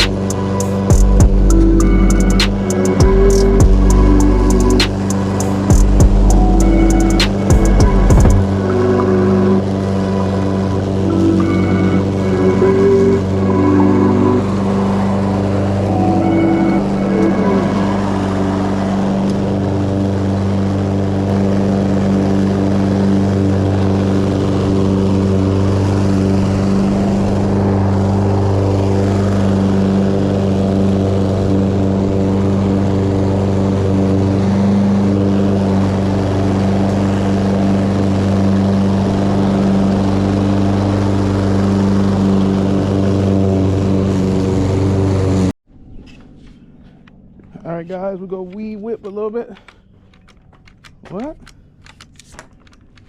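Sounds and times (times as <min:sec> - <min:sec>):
lawn mower running: 0:00.0 - 0:45.6.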